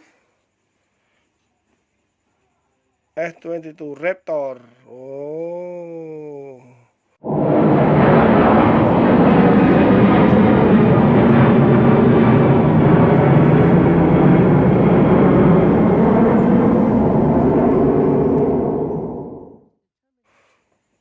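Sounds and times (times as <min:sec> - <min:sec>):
jet aircraft engine roar: 0:07.2 - 0:19.6.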